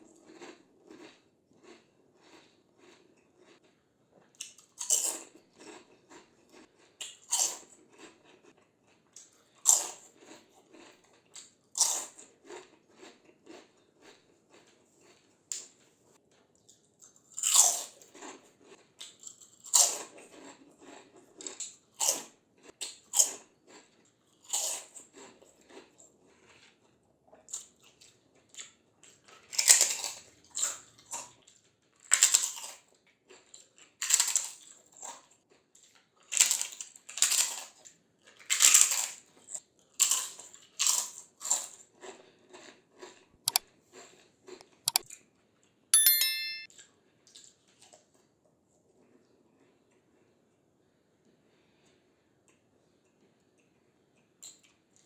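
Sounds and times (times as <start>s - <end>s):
crunchy chewing: 0.0s - 15.9s, 16.6s - 39.3s, 40.0s - 45.2s.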